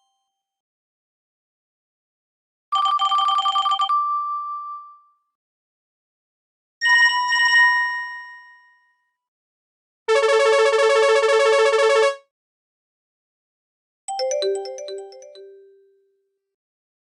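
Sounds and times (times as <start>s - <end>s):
electronic phone ringtone: 2.8s - 4.2s, 10.1s - 12.2s.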